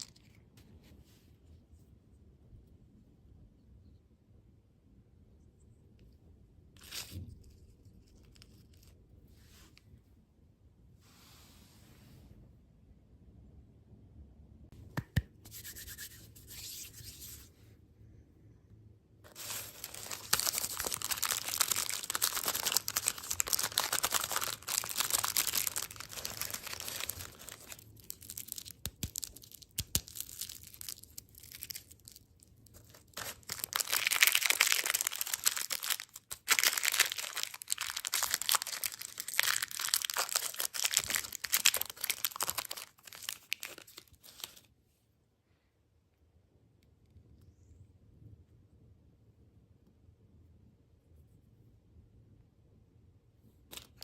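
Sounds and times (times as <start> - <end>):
packaging crinkling and tearing: 0.0 - 0.4, 19.3 - 44.7.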